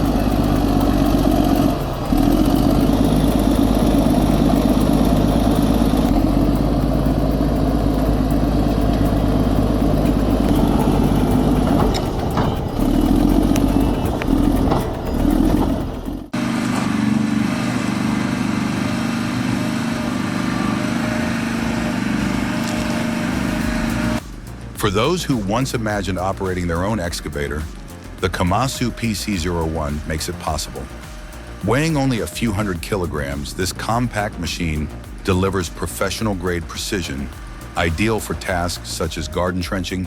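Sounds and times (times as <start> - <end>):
another machine engine running: 0.0 - 24.5
heavy machinery diesel engine: 0.0 - 25.2.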